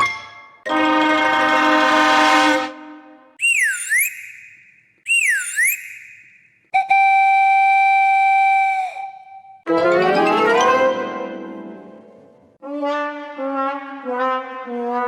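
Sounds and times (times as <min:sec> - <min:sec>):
long steady whistle blast: 0:03.4 - 0:09.7
swooping whistle glides: 0:03.4 - 0:09.7.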